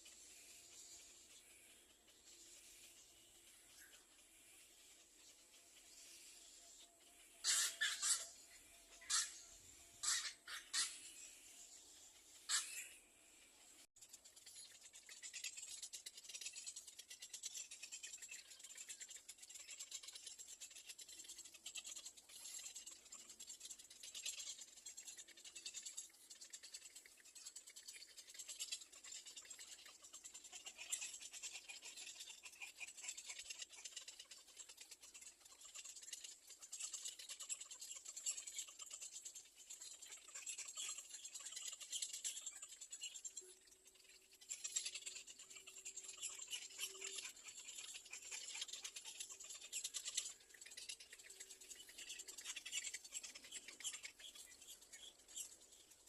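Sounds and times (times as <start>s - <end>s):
birds rustling in a nest: 14.0s - 56.0s.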